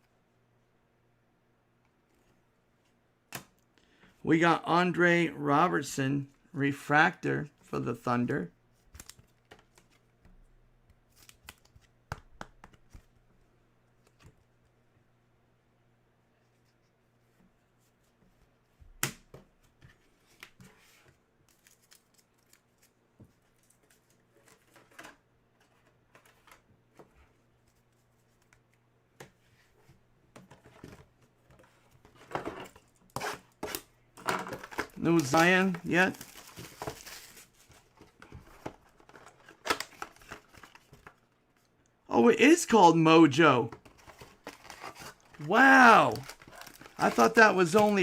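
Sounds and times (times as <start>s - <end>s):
cards sliding and rustling: 43.9s - 48.0s.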